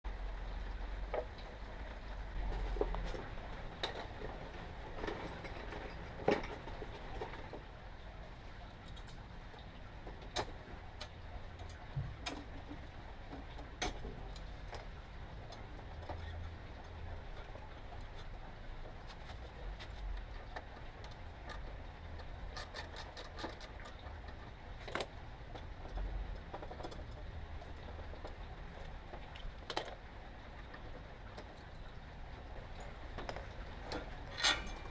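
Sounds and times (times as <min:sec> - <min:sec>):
metal tools clicking and clinking: 0:33.9 - 0:34.9.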